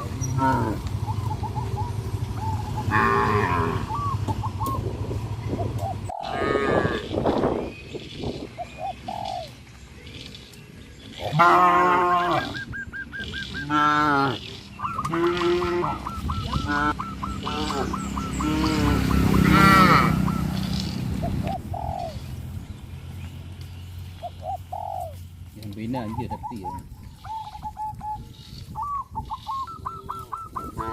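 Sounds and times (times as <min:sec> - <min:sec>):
geese honking: 0:00.0 - 0:04.8, 0:11.2 - 0:22.2, 0:29.6 - 0:30.9.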